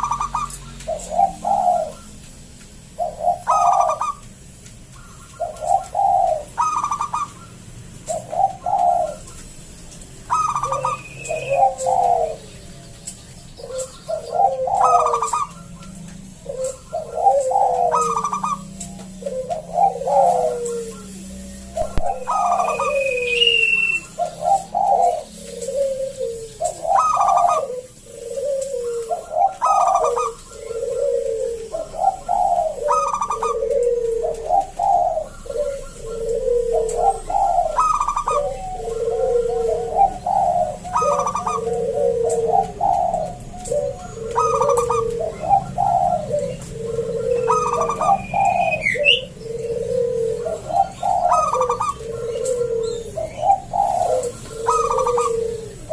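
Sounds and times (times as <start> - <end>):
dove cooing: 0.0 - 55.9
faint high bird whistle: 22.7 - 24.2.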